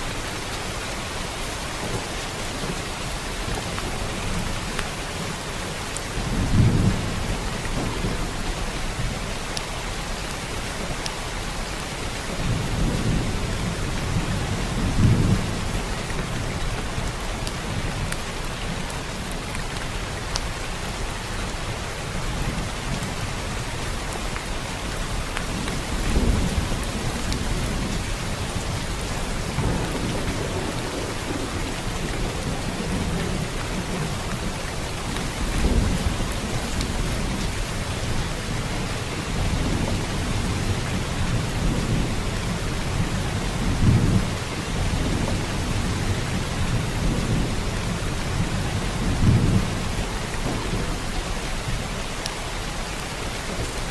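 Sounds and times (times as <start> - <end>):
rain falling: 0.0 - 53.9
thunder rumbles: 12.3 - 18.2, 25.1 - 52.0.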